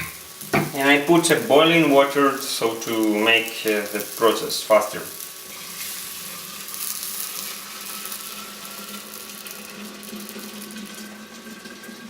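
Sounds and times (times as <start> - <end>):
water pouring into a pot: 5.2 - 12.0.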